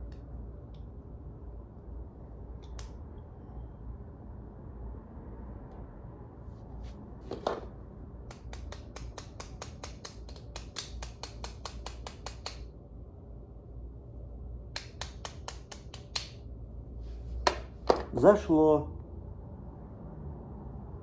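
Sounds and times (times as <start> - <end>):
rapid sharp hand tool clicks: 8.3 - 12.7, 14.8 - 16.4.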